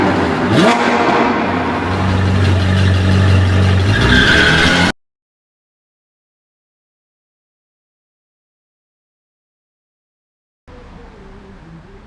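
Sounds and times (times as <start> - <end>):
vehicle engine running: 0.0 - 4.3, 10.7 - 12.0.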